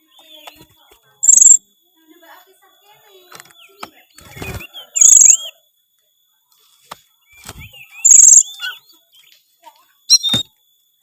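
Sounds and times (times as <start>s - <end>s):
bird rattling trills: 1.2s - 1.6s, 3.4s - 5.6s, 7.3s - 8.8s
bird slurred whistles: 1.2s - 1.6s, 4.4s - 5.6s, 7.4s - 8.9s, 10.1s - 10.5s.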